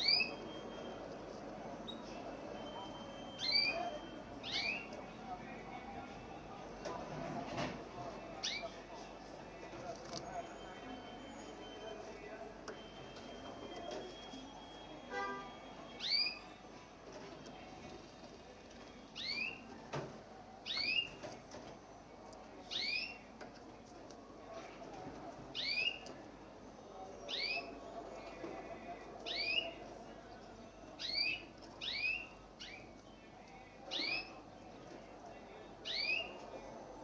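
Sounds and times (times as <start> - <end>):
canary chirping call: 0.0 - 5.0, 8.4 - 8.9, 10.3 - 16.6, 19.1 - 19.7, 20.6 - 21.3, 22.6 - 23.3, 25.5 - 26.1, 27.2 - 27.9, 29.2 - 29.8, 30.9 - 33.0, 33.9 - 34.4, 35.8 - 36.4.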